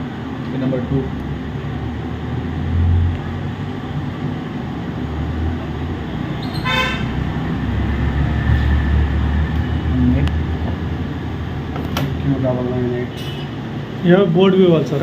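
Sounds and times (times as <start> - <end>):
road traffic rumble: 0.0 - 15.0
vehicle horn toot: 6.4 - 7.2, 13.1 - 13.5.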